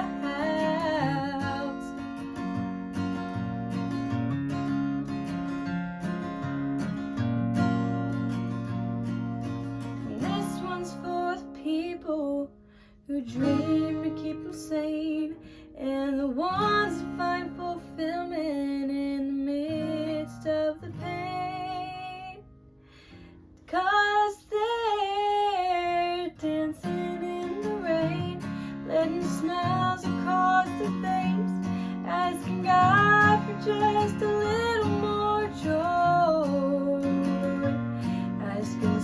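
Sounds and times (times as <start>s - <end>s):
woman singing: 0.0s - 2.3s, 10.0s - 22.5s, 23.6s - 39.0s
acoustic guitar strumming: 0.0s - 11.7s, 26.4s - 39.0s.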